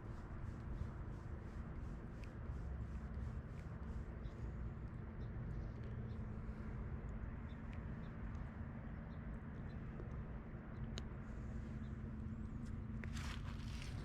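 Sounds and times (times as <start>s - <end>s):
constant hum: 0.0s - 14.0s
low outdoor rumble: 0.0s - 14.0s.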